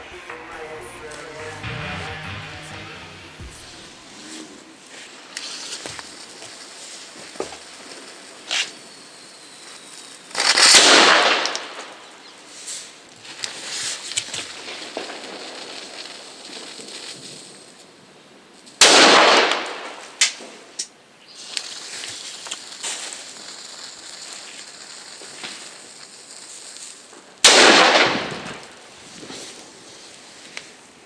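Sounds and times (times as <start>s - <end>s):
firecracker bangs: 0.0s - 4.2s.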